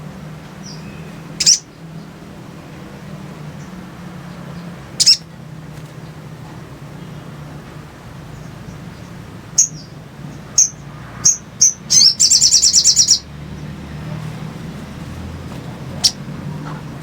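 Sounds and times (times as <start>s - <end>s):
sunbird chirping and trilling: 0.5s - 2.4s, 3.4s - 5.4s, 8.3s - 14.2s.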